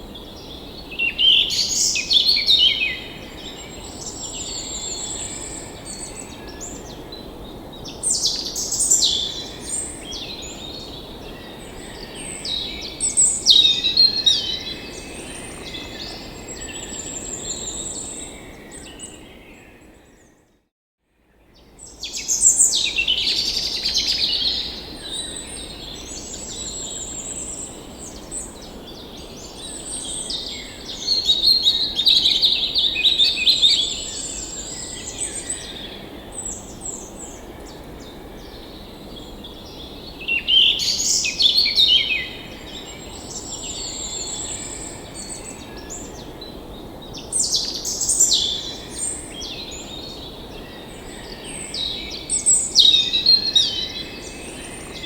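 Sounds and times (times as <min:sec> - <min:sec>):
songbirds singing and chirping: 0:21.4 - 0:55.0.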